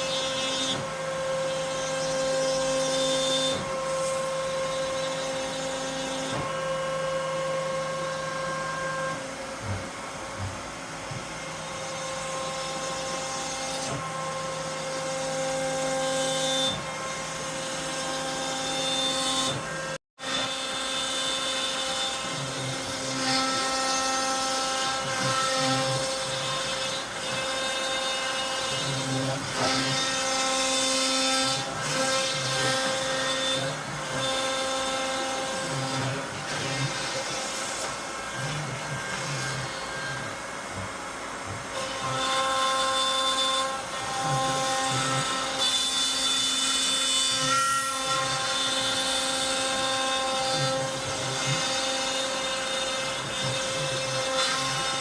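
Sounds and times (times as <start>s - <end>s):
bit cutting wood: 0.0s - 55.0s
router spindle whining: 0.0s - 55.0s.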